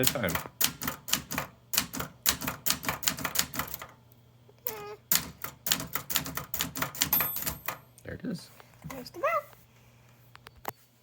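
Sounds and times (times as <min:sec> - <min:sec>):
manual typewriter typing: 0:00.0 - 0:04.0, 0:05.1 - 0:07.8.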